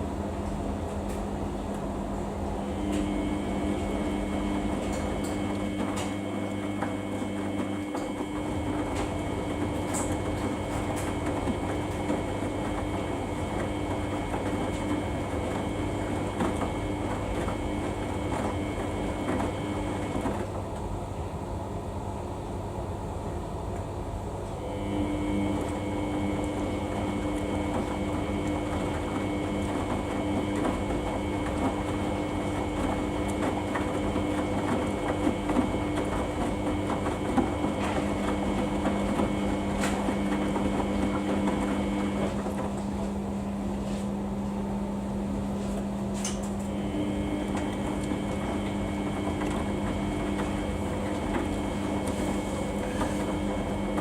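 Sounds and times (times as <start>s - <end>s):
washing machine drum churning: 0.0s - 21.2s, 24.5s - 54.0s
motor humming: 2.6s - 20.4s, 46.5s - 54.0s.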